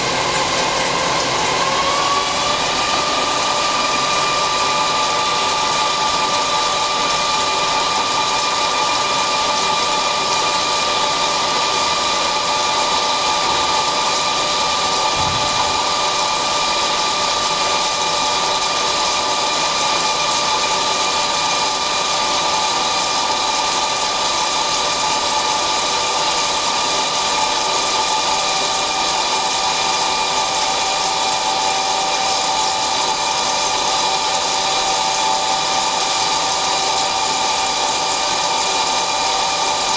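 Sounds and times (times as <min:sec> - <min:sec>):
lathe machining hum: 0:00.0 - 0:23.0.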